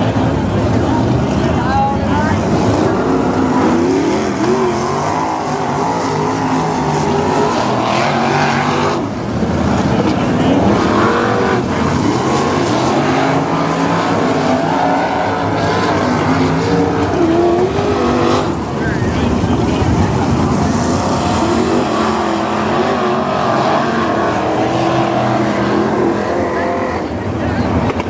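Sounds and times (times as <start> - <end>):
race car engines revving: 0.0 - 28.0.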